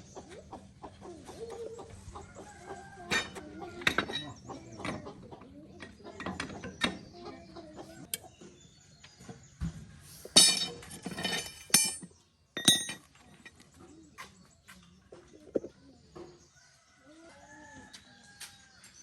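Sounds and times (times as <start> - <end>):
light metal clinks: 10.3 - 13.6.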